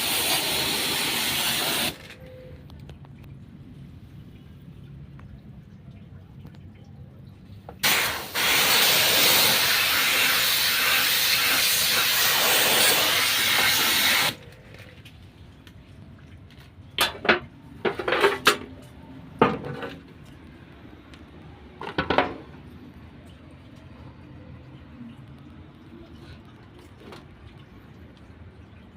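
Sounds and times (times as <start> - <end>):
high-pressure water jet spraying: 0.0 - 2.1, 7.8 - 14.4.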